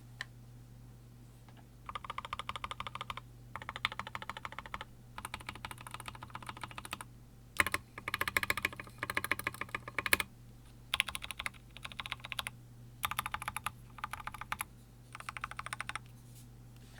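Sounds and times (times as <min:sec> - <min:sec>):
mechanical keyboard typing: 0:01.9 - 0:10.3, 0:10.9 - 0:16.1.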